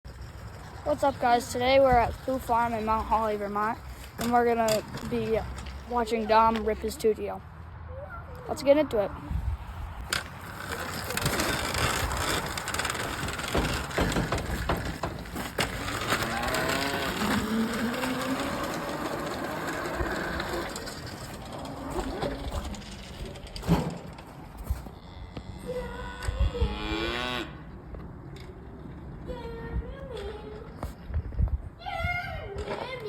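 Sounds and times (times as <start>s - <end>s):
dirt bike engine: 0.1s - 7.0s, 9.0s - 26.0s
tyres crunching: 9.8s - 25.5s.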